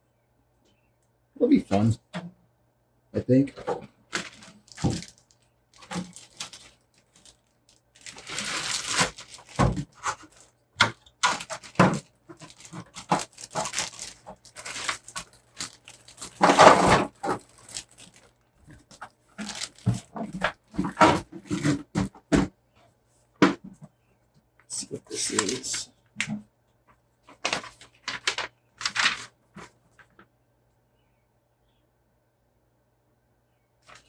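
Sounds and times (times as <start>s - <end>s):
plastic packaging rustling: 3.6s - 22.5s, 25.2s - 25.8s, 27.3s - 30.2s.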